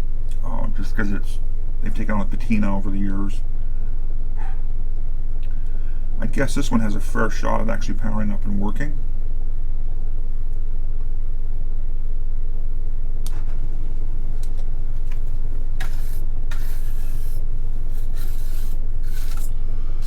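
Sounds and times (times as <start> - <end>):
loud low electrical hum: 0.0 - 20.0
hands rubbing and scraping parts: 14.4 - 20.0.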